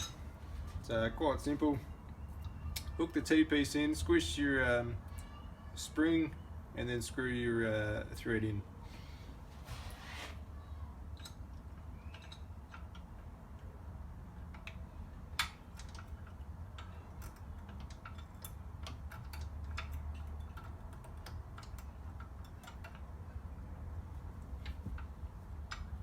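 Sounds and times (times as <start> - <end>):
cable and metal fittings clicking: 11.1 - 26.0.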